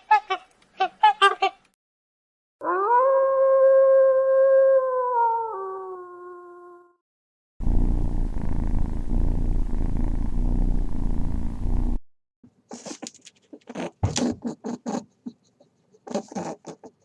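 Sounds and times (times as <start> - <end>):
howl falling in pitch: 2.6 - 7.0
cat purring: 7.7 - 11.9.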